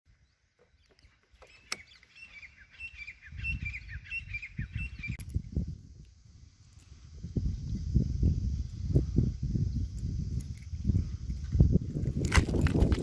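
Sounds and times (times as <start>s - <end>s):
bird chirping falling notes: 0.3s - 5.3s.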